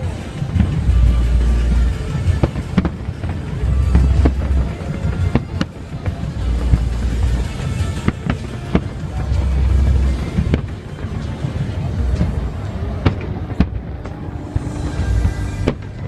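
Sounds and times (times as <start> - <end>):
fireworks bangs: 0.0 - 16.0
music with heavy bass: 0.0 - 16.0.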